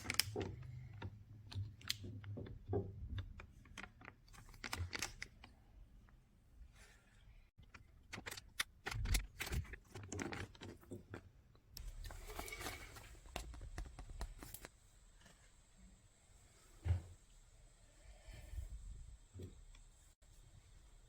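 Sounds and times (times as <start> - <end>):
packaging clicks and crinkles: 0.0 - 1.1, 3.6 - 5.5
packaging rustling: 3.7 - 5.4, 11.8 - 14.7.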